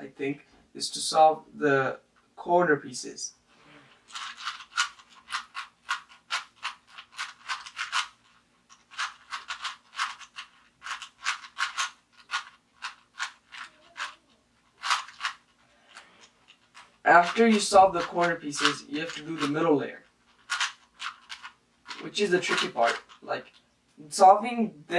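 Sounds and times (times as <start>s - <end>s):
plastic puzzle cube clicking: 4.1s - 17.4s, 20.4s - 23.6s.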